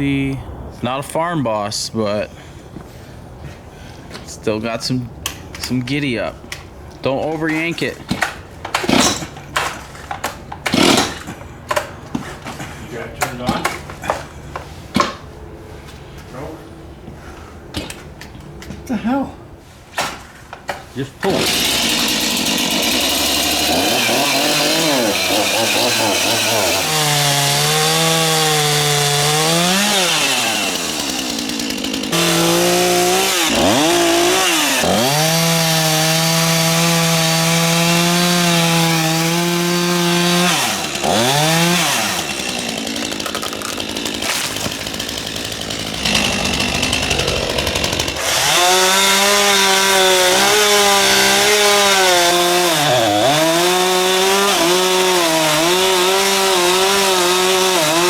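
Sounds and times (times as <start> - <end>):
chainsaw cutting branches: 7.4 - 15.3, 21.2 - 58.0.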